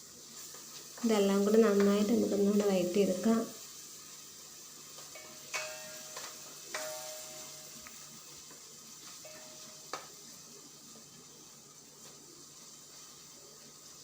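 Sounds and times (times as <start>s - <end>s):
sauce sizzling: 0.0s - 14.0s
spoon knocking against pan: 5.1s - 7.5s.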